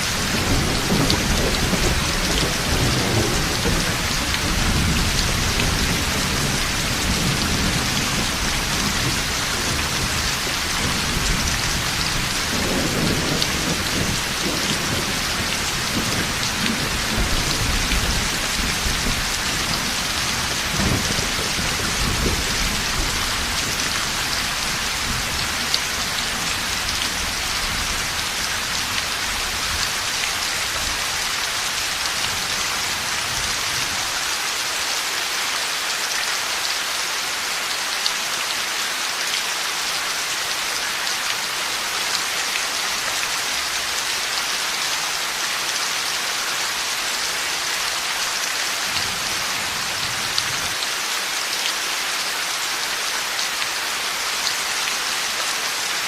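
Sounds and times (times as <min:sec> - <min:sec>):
heavy rain falling: 0:00.0 - 0:56.0
rolling thunder: 0:00.2 - 0:10.2.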